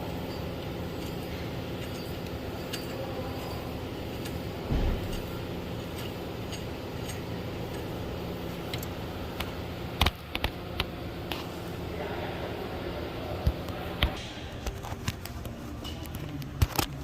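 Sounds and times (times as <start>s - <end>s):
steady low hum: 0.0s - 17.0s
metal tool clicks and clinks: 1.0s - 4.4s.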